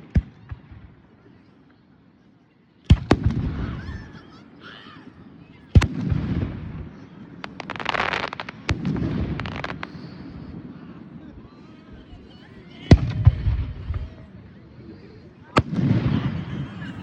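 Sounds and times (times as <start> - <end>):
crackling firework pops: 5.7 - 10.1.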